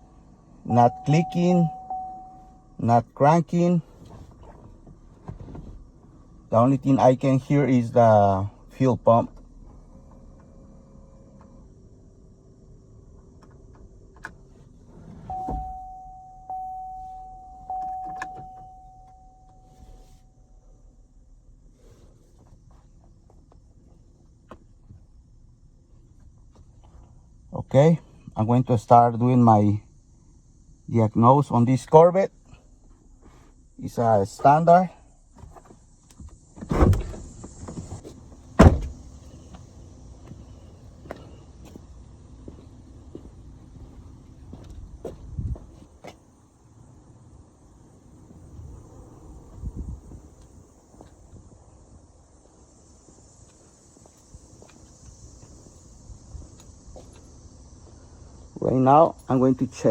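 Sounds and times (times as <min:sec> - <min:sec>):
car chime tone: 0:00.6 - 0:03.8, 0:15.3 - 0:20.6
thump: 0:35.4 - 0:39.0.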